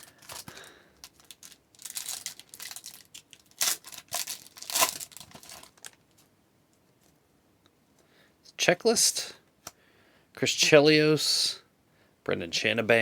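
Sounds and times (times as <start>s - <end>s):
wrapper tearing and crinkling: 0.0s - 6.1s.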